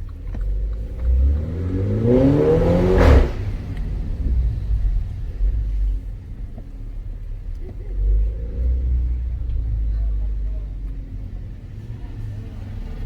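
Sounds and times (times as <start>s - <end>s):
car engine revving: 0.0s - 13.0s
engine idle rumble: 0.0s - 13.0s
sharp exhaust pop: 0.4s - 6.7s.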